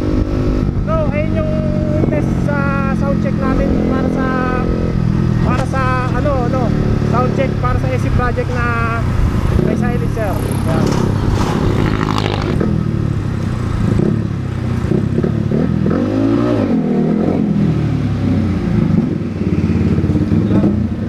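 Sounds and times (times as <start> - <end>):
motorcycle engine revving: 0.0 - 21.0.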